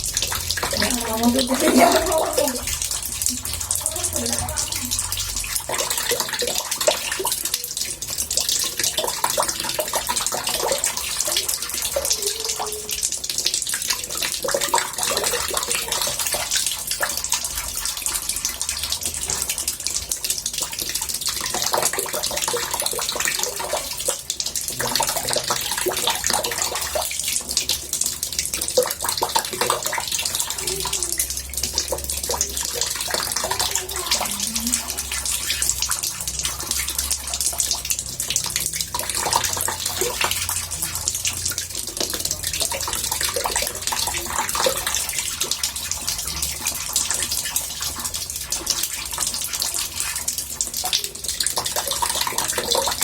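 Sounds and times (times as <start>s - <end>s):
water running into bathtub: 0.0s - 53.0s.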